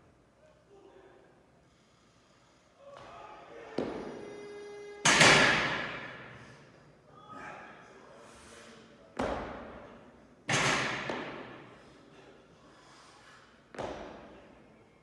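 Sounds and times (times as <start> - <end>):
weights thudding on gym floor: 9.2 - 9.8, 10.5 - 11.6, 13.7 - 14.4.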